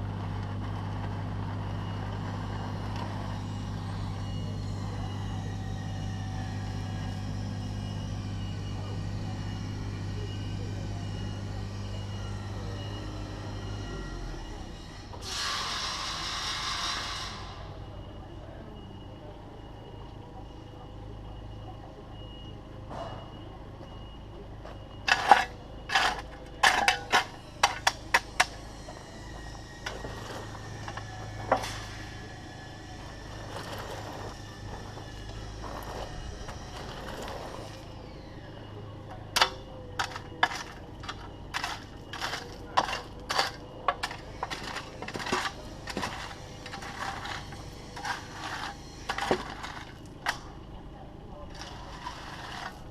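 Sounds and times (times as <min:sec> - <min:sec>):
mini digger diesel engine running: 0:00.0 - 0:52.9
steel bucket scraping stone: 0:25.1 - 0:28.5, 0:29.8 - 0:32.1, 0:33.2 - 0:34.5, 0:40.0 - 0:50.1, 0:51.5 - 0:52.9.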